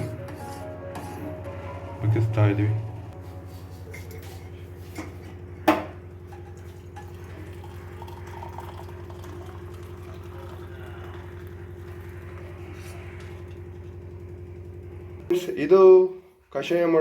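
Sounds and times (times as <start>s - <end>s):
steady low hum: 0.0s - 6.5s
liquid trickling into cup: 6.3s - 12.6s.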